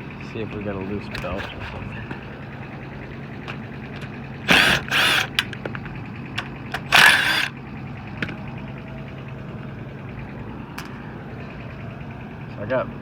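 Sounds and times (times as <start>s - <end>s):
hvac unit humming: 0.0s - 12.5s
loud rasping bursts: 0.9s - 2.4s, 4.4s - 5.5s, 6.8s - 7.5s
sharp clicks: 3.5s - 5.8s.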